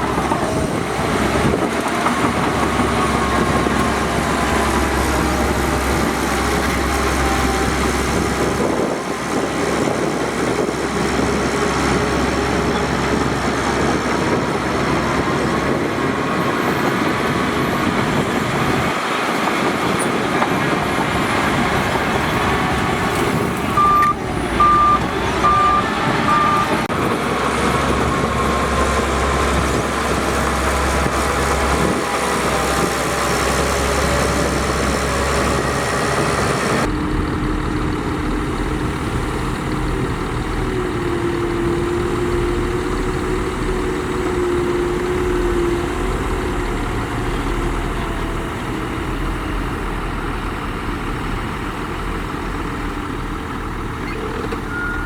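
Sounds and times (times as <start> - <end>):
heavy machinery diesel engines: 0.0 - 55.0
reversing alarm beeping: 23.8 - 26.8, 54.1 - 55.0.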